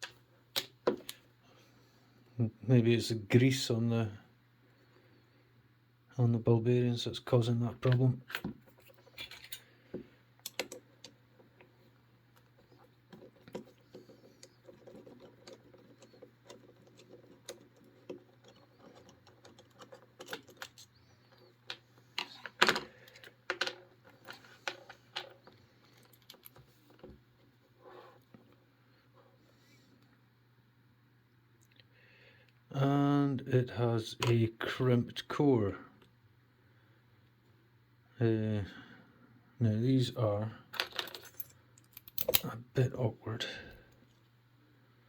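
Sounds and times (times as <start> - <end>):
padlock clicks and rattles: 10.4 - 11.2, 41.0 - 42.5.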